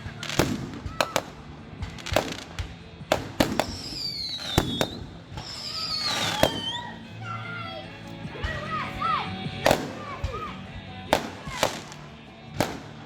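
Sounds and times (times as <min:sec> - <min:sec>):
fireworks bangs and pops: 0:00.0 - 0:07.0, 0:09.5 - 0:13.0
falling firework whistles: 0:03.4 - 0:07.0.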